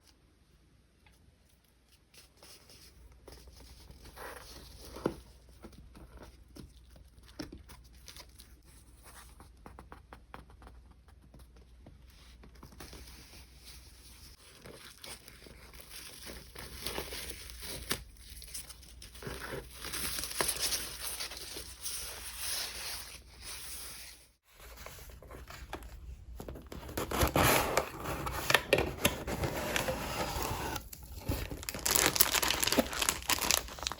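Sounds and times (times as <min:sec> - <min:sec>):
packaging crinkling and tearing: 0:26.7 - 0:33.9.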